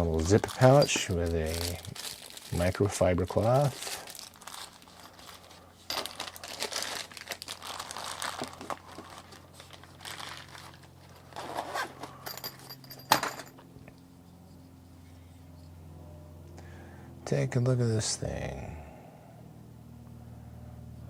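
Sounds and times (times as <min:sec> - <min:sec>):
packaging crinkling and rustling: 0:00.0 - 0:12.2.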